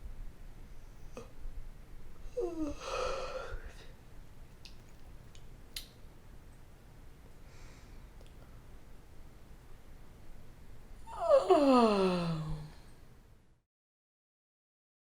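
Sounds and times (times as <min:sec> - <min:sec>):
person yawning: 0:02.3 - 0:03.8, 0:11.1 - 0:12.8.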